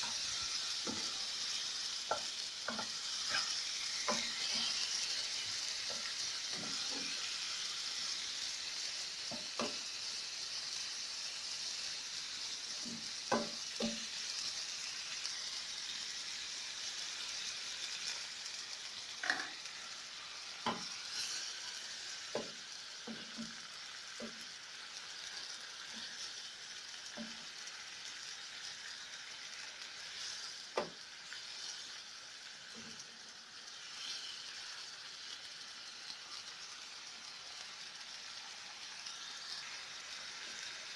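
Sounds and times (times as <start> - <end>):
food sizzling in a frying pan: 0.0 - 40.9
utensil tapping a pan: 13.3 - 14.1, 22.4 - 23.6.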